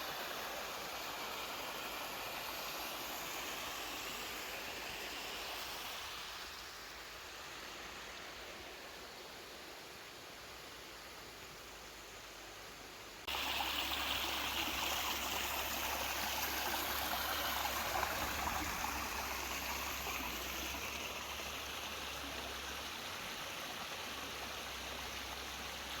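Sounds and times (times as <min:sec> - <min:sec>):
stream rushing: 0:13.2 - 0:26.0.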